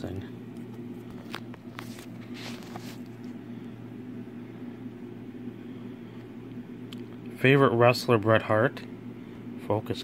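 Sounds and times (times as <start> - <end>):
low electrical hum: 0.0 - 10.0.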